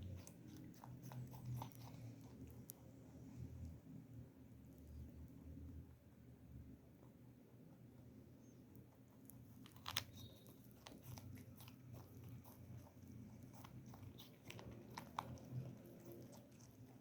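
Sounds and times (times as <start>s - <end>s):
rabbit chewing food: 0.0s - 17.0s.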